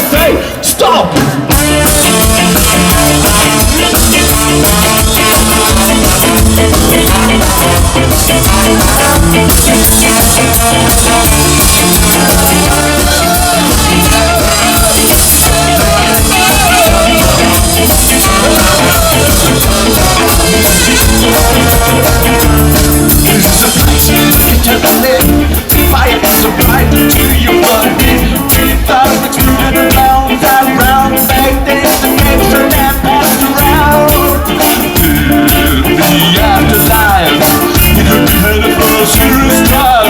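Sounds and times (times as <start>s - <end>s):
ska band playing live: 0.0s - 40.0s.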